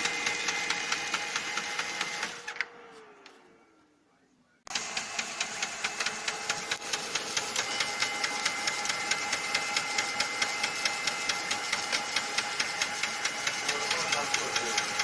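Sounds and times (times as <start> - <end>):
steady mechanical whine: 0.0 - 15.0
printer grinding click: 4.7 - 15.0.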